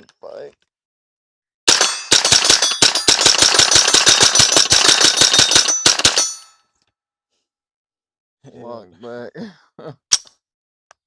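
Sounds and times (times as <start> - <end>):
rifle firing rapid shots: 1.7 - 6.5.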